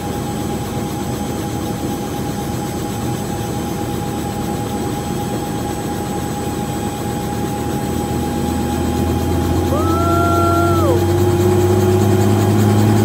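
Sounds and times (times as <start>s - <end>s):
helicopter drone: 0.0s - 13.0s.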